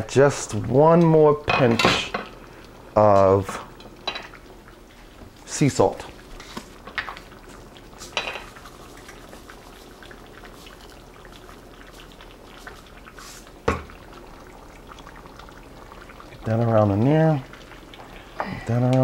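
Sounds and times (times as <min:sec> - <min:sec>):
sauce bubbling in a pot: 0:00.0 - 0:19.0.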